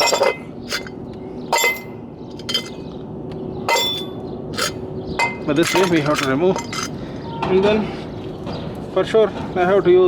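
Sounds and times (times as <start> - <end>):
steel brake drum clinking: 0.0 - 2.8, 3.7 - 7.0.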